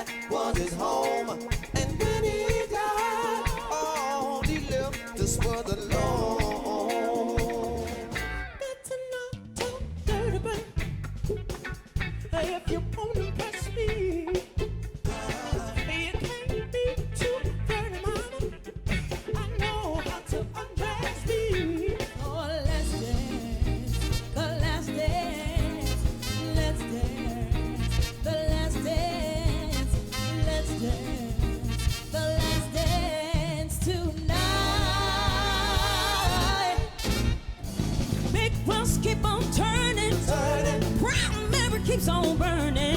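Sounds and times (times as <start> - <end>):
live soul band playing: 0.0 - 8.7, 9.5 - 42.9
person singing lead: 0.0 - 9.2, 19.5 - 37.3, 38.4 - 42.9.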